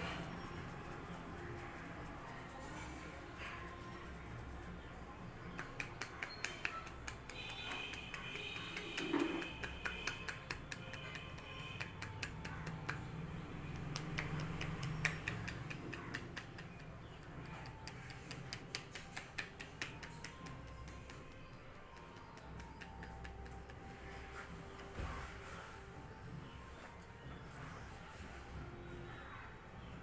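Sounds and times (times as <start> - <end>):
faint background music: 0.0 - 30.0
hands clicking in hair: 5.4 - 25.2.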